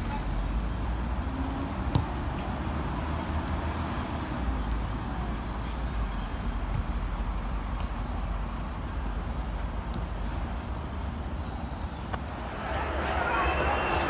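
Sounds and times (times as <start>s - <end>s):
football being kicked: 12.1s - 12.6s.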